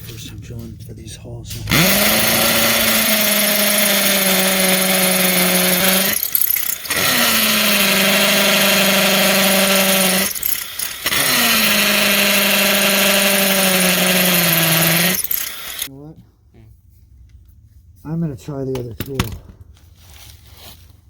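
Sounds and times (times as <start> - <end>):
hammer drill boring into concrete: 1.6 - 15.9.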